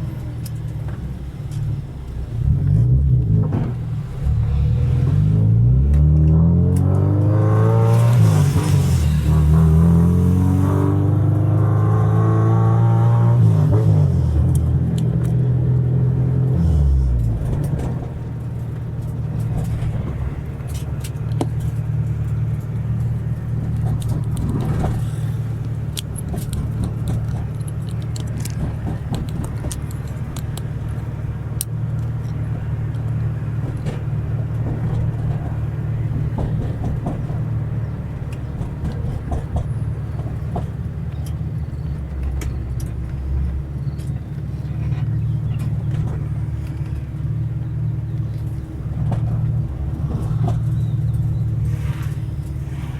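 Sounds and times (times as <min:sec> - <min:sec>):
car engine and road drone: 0:00.0 - 0:52.9
light clicks and rattles: 0:17.2 - 0:37.5.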